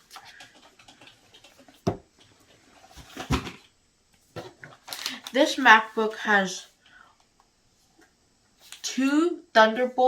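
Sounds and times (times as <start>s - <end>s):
items knocking on surface: 1.8s - 2.1s, 3.1s - 3.6s
packaging rustling: 4.4s - 5.6s.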